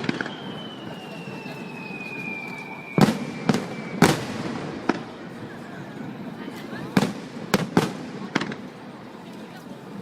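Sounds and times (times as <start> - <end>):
firework whistle falling in pitch: 0.0 - 4.2.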